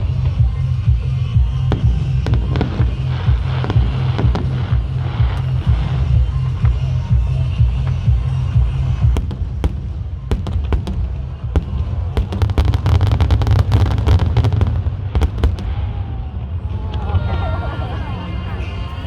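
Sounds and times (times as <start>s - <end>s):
fireworks cracking and banging: 0.0s - 17.1s
heavy low rumble: 0.0s - 19.0s.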